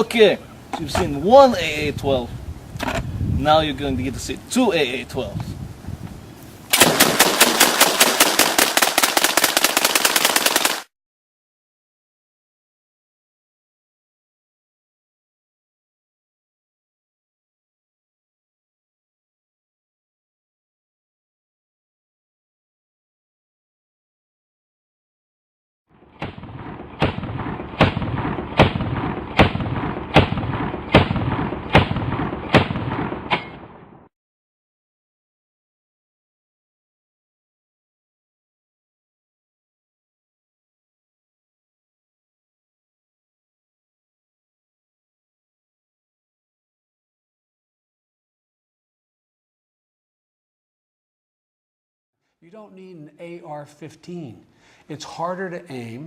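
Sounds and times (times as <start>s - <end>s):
automatic shotgun burst: 6.7s - 10.9s
shotgun shots: 6.7s - 10.9s, 26.2s - 34.0s.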